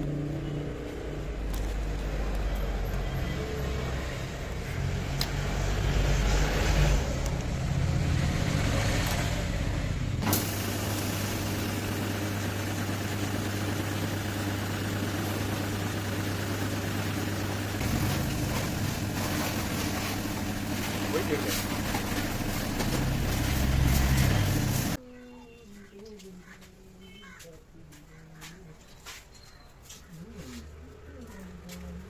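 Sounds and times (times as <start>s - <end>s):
motorcycle engine humming: 7.0s - 25.0s.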